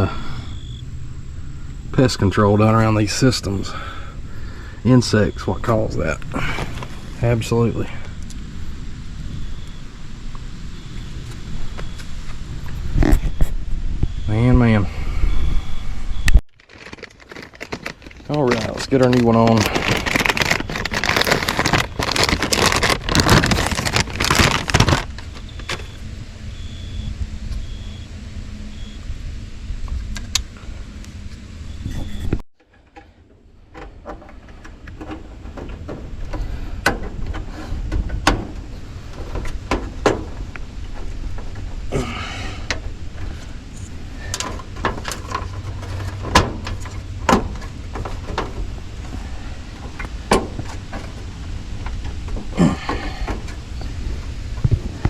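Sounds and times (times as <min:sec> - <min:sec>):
steady low hum: 0:00.0 - 0:55.0
loud rustling: 0:16.6 - 0:26.2.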